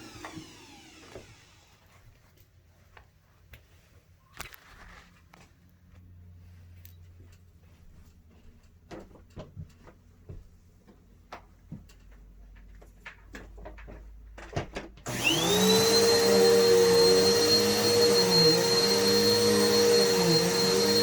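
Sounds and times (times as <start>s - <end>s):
vacuum cleaner motor whining: 0.0s - 1.9s, 15.0s - 21.0s.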